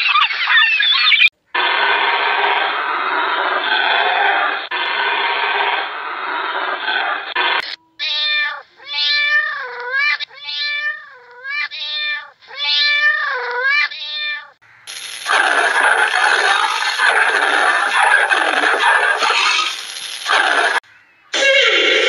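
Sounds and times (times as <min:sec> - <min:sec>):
cat meowing: 0:07.8 - 0:14.6
hiss-like noise: 0:14.9 - 0:20.8.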